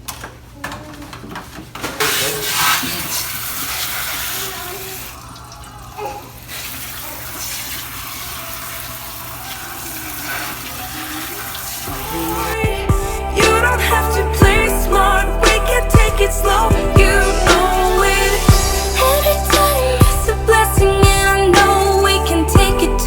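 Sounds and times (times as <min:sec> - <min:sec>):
tap water running into sink: 0:02.0 - 0:12.1.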